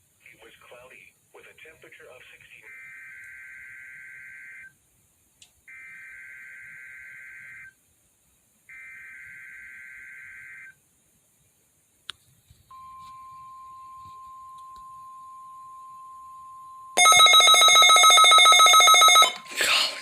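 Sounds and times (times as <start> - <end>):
steady warning alarm tone: 2.7 - 4.7, 12.7 - 19.6.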